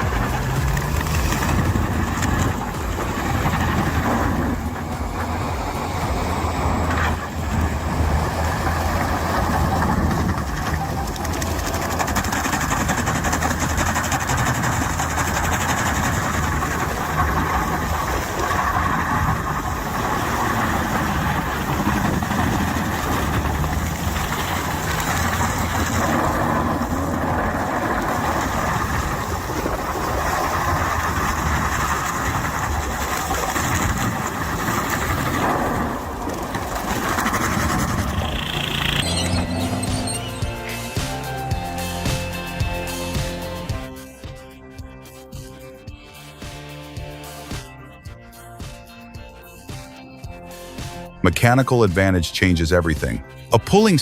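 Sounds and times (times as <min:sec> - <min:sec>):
heavy machine engine running: 0:00.0 - 0:44.0.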